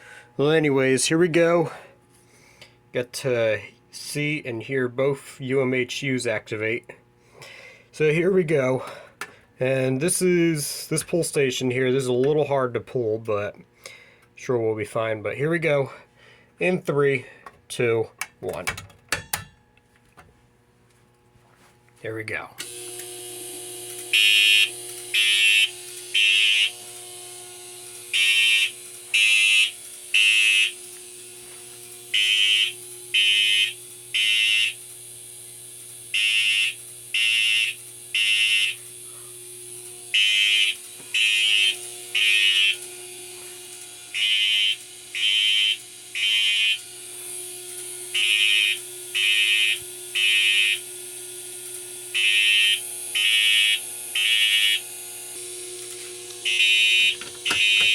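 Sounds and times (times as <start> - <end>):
fire alarm horns honking: 22.6 - 35.0, 36.1 - 39.1, 40.0 - 47.0, 47.7 - 51.0, 52.1 - 57.9.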